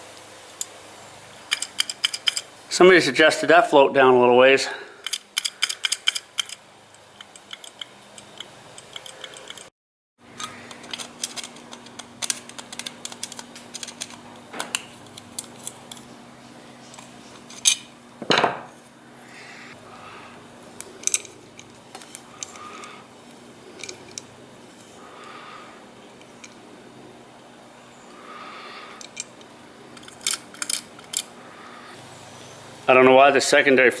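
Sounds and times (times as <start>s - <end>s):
faint steady hum: 0.0s - 34.0s
small metal clicks and clinks: 1.5s - 2.5s, 5.0s - 9.7s, 10.4s - 16.0s, 30.0s - 31.3s.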